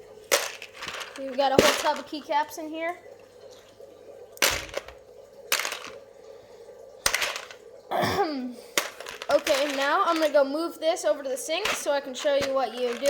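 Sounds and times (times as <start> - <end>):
plastic keycaps rattling in a bowl: 0.3 - 2.2, 4.4 - 6.0, 7.1 - 7.6, 8.8 - 10.7, 11.4 - 13.0.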